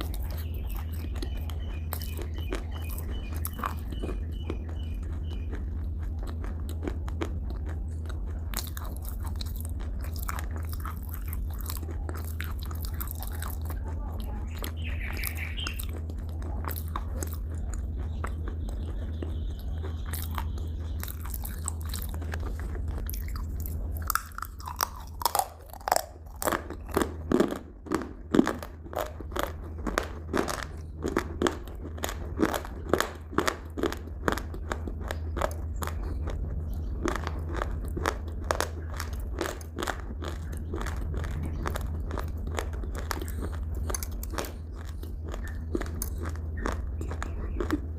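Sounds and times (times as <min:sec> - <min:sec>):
crunchy food chewing: 0:00.0 - 0:47.9
low hum: 0:00.0 - 0:47.9.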